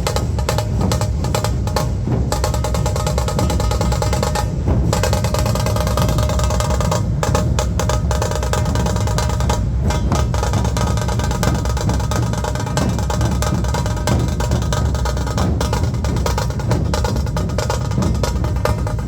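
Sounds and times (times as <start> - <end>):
dhol drums playing: 0.0 - 19.0.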